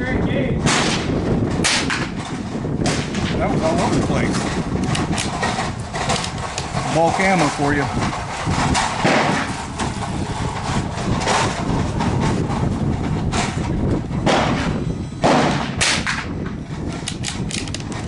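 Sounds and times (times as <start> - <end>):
wind buffeting microphone: 0.0 - 18.0
gunfire cracks: 9.0 - 9.5, 14.3 - 16.3.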